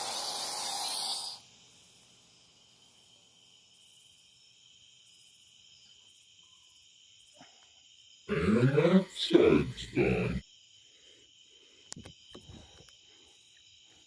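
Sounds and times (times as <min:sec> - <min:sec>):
torch flame hissing: 0:00.0 - 0:01.4.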